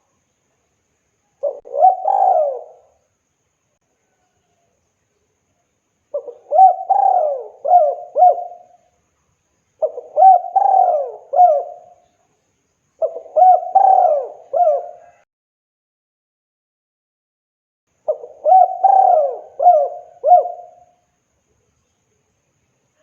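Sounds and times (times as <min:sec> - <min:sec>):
dove cooing: 0:01.4 - 0:03.0, 0:06.1 - 0:08.8, 0:09.8 - 0:12.0, 0:13.0 - 0:15.2, 0:18.1 - 0:20.9.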